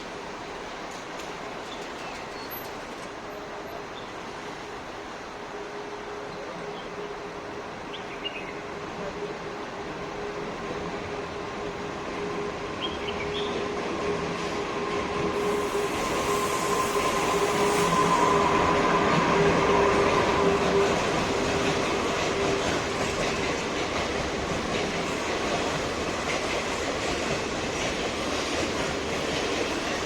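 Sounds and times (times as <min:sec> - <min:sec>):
train wheels whining on rails: 0:00.0 - 0:07.9, 0:08.6 - 0:30.0.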